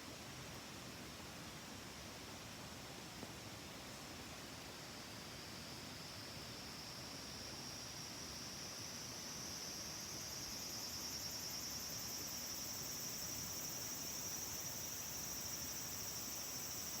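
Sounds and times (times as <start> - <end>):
insects trilling: 7.7 - 17.0.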